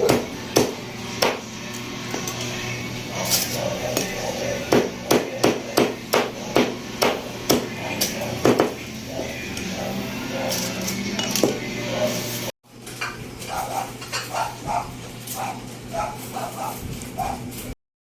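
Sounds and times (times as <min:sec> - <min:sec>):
kitchen utensils clinking and knocking: 0:10.4 - 0:11.7, 0:12.8 - 0:16.5.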